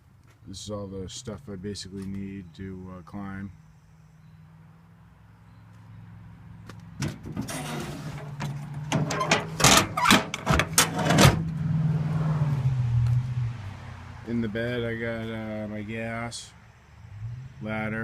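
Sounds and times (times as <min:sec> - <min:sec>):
clattering knocks and bangs: 0:07.0 - 0:11.4.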